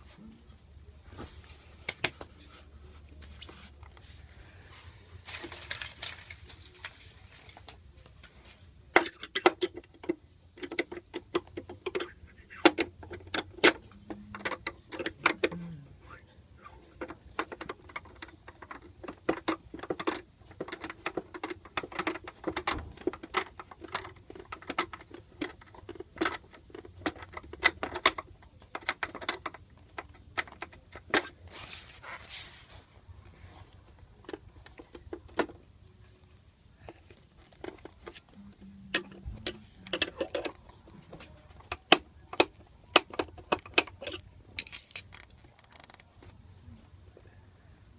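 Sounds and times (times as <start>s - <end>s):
small hard parts clicking and rattling: 5.3s - 15.8s, 16.8s - 31.5s, 33.8s - 46.4s.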